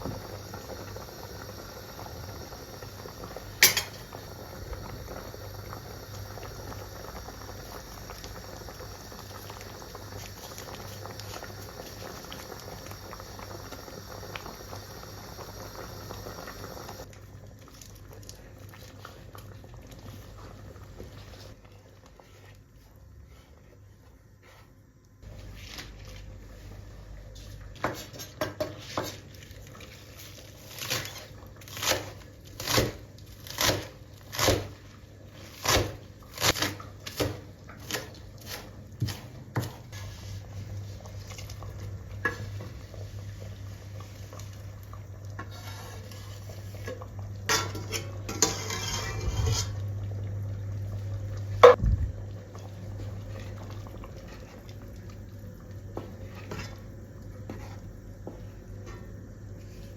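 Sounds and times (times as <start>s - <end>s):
utensil scraping a pot: 45.4s - 49.9s.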